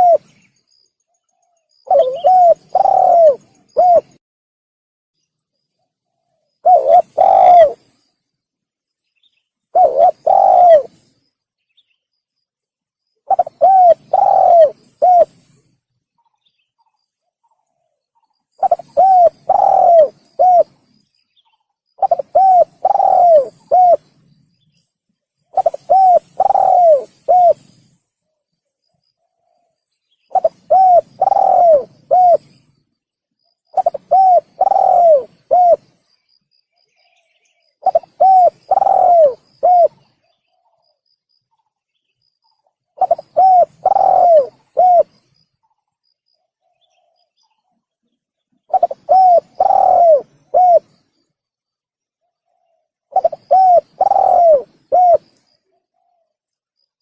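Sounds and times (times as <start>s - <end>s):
dove cooing: 0.0s - 0.3s, 1.8s - 4.2s, 6.6s - 7.9s, 9.7s - 11.1s, 13.3s - 15.6s, 18.6s - 20.9s, 22.0s - 24.2s, 25.5s - 27.9s, 30.3s - 32.6s, 33.7s - 36.0s, 37.8s - 40.2s, 43.0s - 45.2s, 48.7s - 51.0s, 52.4s - 56.3s.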